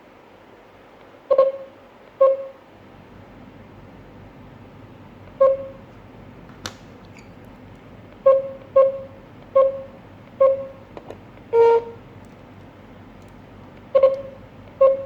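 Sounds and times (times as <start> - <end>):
alarm control panel beeping: 1.3 - 2.6, 5.4 - 5.8, 8.2 - 10.9, 11.5 - 12.0, 13.9 - 15.0
click: 13.2 - 13.4.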